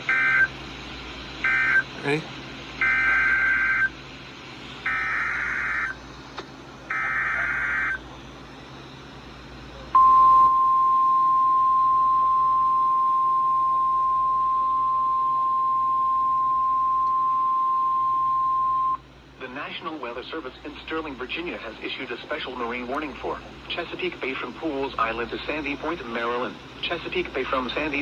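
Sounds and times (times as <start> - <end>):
steady warning alarm tone: 0.0 - 0.6, 1.4 - 2.2, 2.8 - 4.0, 4.8 - 6.0, 6.9 - 8.0, 10.0 - 19.0.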